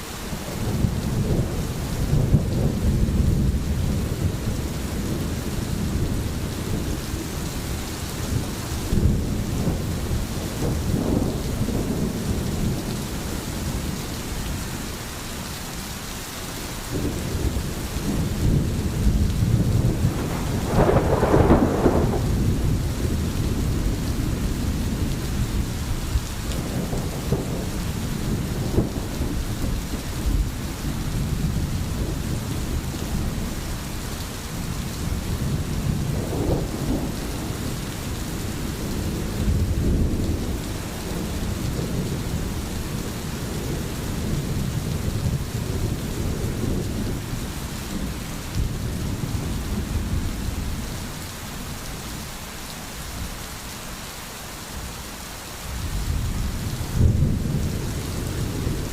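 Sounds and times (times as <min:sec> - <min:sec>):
steady rain: 0:00.0 - 0:58.9
rolling thunder: 0:00.5 - 0:14.0, 0:16.9 - 0:33.7, 0:34.5 - 0:51.2, 0:55.7 - 0:58.9.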